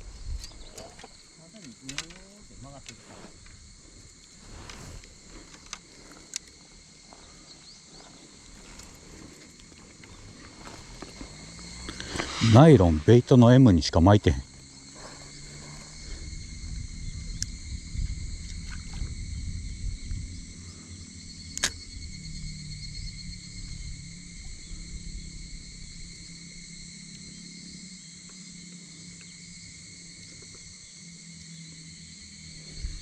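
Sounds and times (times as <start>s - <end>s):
wind rumble on microphone: 0.0s - 5.5s, 8.5s - 27.0s, 32.5s - 33.0s
insects shrilling: 0.0s - 33.0s.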